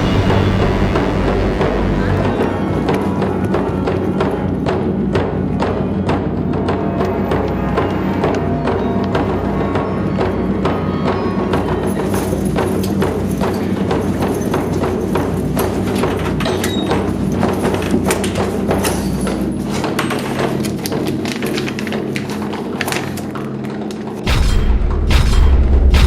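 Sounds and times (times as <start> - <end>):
background music with held tones: 0.0 - 5.1.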